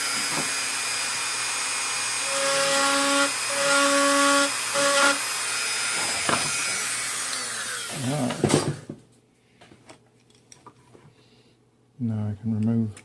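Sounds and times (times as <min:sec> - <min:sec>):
rotary tool winding down: 0:00.0 - 0:08.2.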